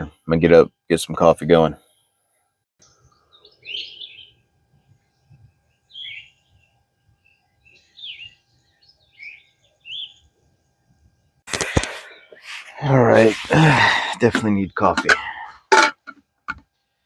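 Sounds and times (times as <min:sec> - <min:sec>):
songbirds chirping: 0:02.8 - 0:15.7, 0:16.6 - 0:17.0.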